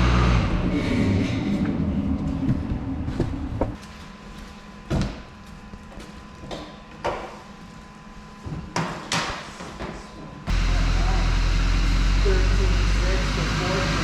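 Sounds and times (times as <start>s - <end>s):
low rumble: 0.0s - 3.8s, 10.5s - 13.8s.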